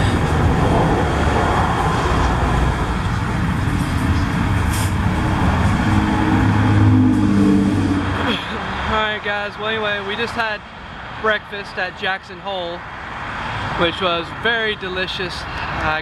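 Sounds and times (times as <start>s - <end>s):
vehicle engine hum: 0.0s - 11.6s
road noise rushing: 0.0s - 16.0s.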